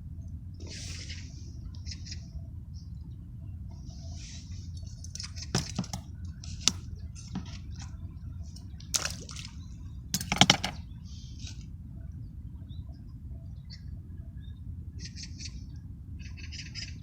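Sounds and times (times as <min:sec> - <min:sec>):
wet splashing and squishing: 0:08.8 - 0:09.7.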